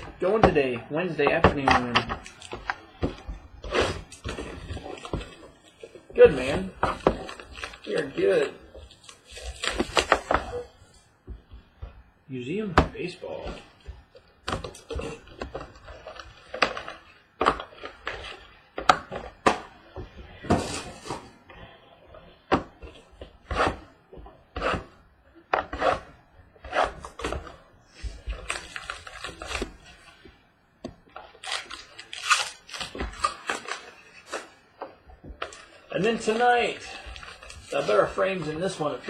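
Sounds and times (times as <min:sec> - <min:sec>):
card packs crinkling and rustling: 0:00.0 - 0:10.8, 0:12.4 - 0:21.4, 0:26.8 - 0:30.2, 0:31.1 - 0:39.0.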